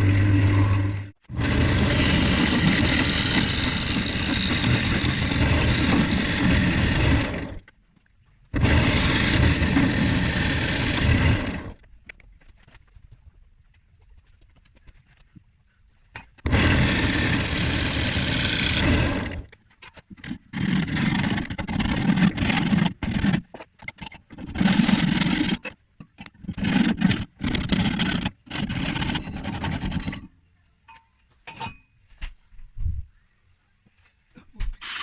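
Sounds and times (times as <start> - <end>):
power tool cutting timber: 0.0 - 7.6, 8.6 - 11.8, 16.4 - 19.5, 20.5 - 23.4, 24.5 - 25.6, 26.6 - 30.2.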